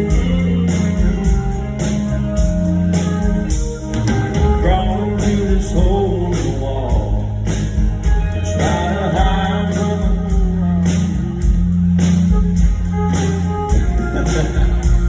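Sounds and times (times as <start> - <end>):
country band playing live: 0.0 - 15.0
lead melody bending in pitch: 8.2 - 15.0.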